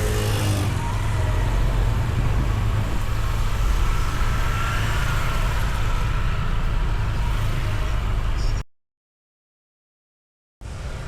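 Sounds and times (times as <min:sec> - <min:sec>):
road noise: 0:00.0 - 0:08.6, 0:10.6 - 0:11.0
wind noise: 0:01.6 - 0:07.5.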